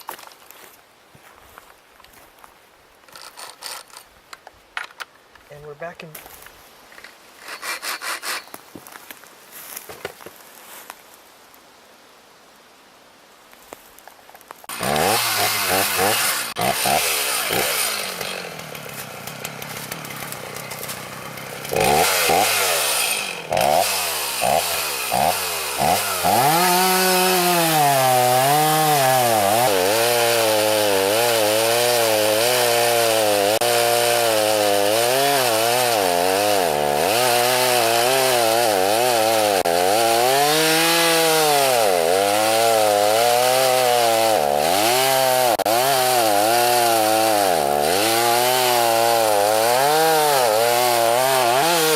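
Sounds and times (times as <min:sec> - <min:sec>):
chainsaw revving and cutting wood: 0:03.1 - 0:04.1, 0:07.4 - 0:08.6, 0:14.6 - 0:51.9.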